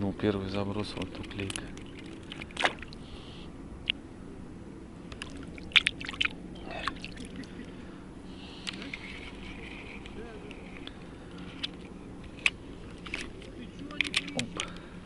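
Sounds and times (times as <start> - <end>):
faint water sounds: 0.0 - 15.0
soft reel whirring: 7.7 - 15.0.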